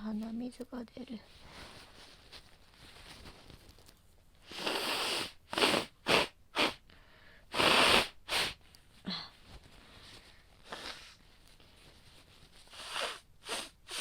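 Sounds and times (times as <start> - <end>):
woman blowing nose: 4.4 - 8.6, 10.6 - 11.2, 12.6 - 14.0
woman sniffing: 4.4 - 9.4, 10.6 - 11.2, 12.6 - 14.0.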